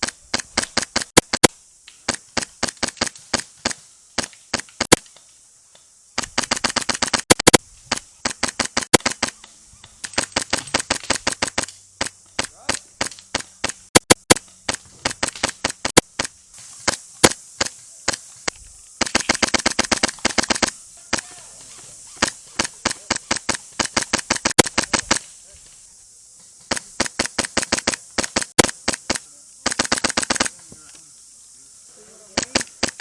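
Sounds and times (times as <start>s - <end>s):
airsoft rifles firing: 6.2s - 9.4s, 10.0s - 18.2s, 19.0s - 21.4s, 22.2s - 25.2s, 26.7s - 30.6s, 32.4s - 33.0s.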